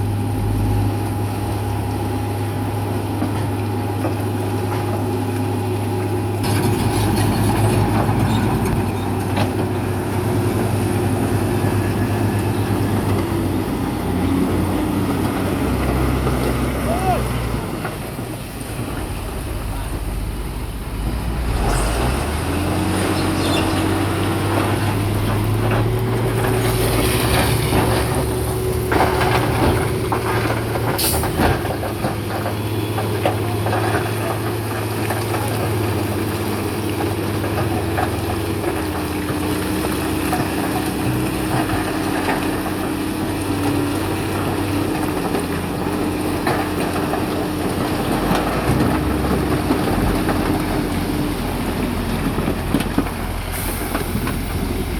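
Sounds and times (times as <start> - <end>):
bulldozer diesel engine running: 0.0 - 54.9
rock and steel clanks and scrapes: 6.4 - 9.6.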